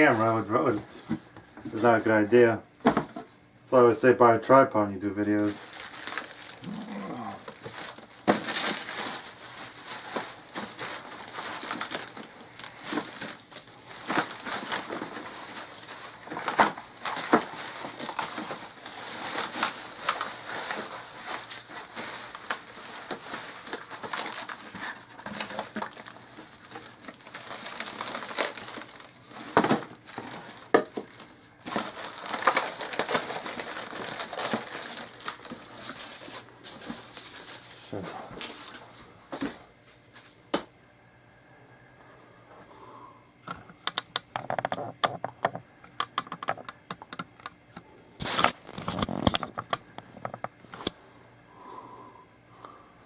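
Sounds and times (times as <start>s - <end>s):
plastic and paper crinkling: 0.0s - 3.1s, 5.1s - 40.4s, 48.2s - 51.0s.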